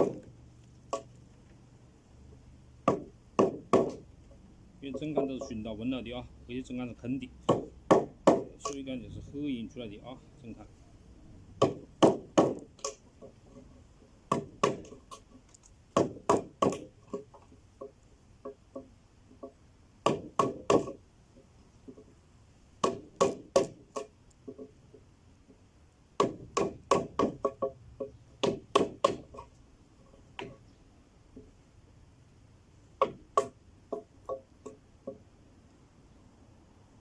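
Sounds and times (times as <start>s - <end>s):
wood chopping strikes: 0.0s - 0.3s, 2.8s - 4.1s, 7.4s - 8.9s, 11.6s - 13.0s, 14.3s - 15.2s, 16.0s - 17.2s, 20.0s - 21.0s, 22.8s - 24.1s, 26.2s - 29.5s, 33.0s - 35.2s.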